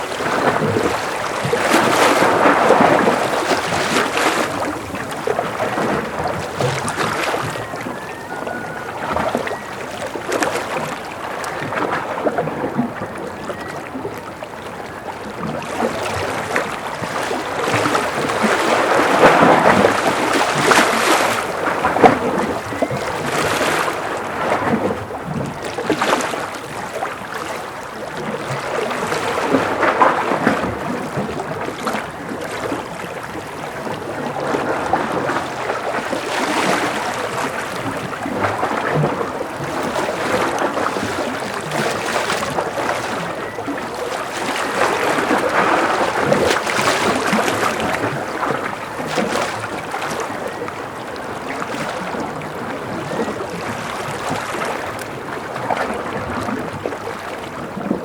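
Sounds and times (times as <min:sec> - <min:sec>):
ocean waves lapping: 0:00.0 - 0:58.0.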